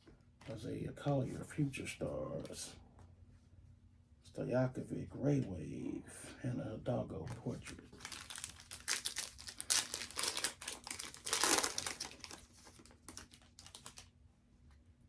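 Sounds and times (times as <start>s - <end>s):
plastic wrapper crinkling: 7.4s - 14.1s.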